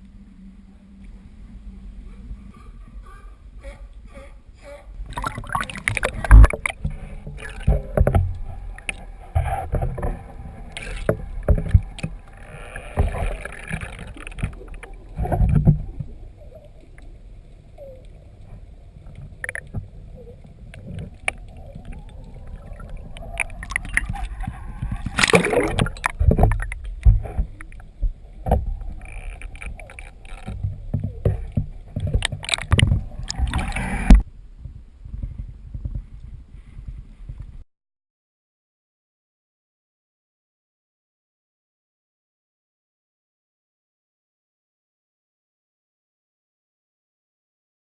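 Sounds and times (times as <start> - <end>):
water slapping hull: 4.9 - 34.2
paddle strokes splashing: 5.0 - 34.2
knocks and thumps against boat: 5.9 - 8.7.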